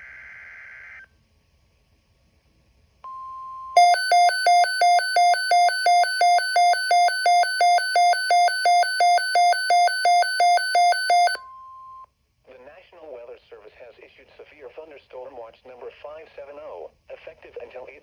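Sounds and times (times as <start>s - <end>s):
alternating electronic alert tone: 3.8s - 11.4s
short steady beep: 3.8s - 11.6s.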